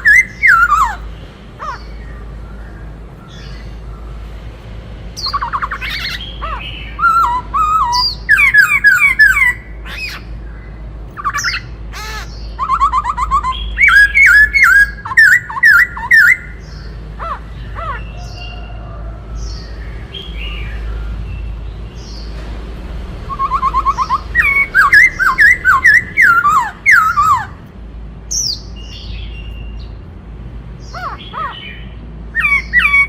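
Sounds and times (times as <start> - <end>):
bird singing whistled phrases: 0.0 - 1.0, 5.2 - 10.2, 12.2 - 16.6, 23.2 - 27.5, 32.4 - 33.0.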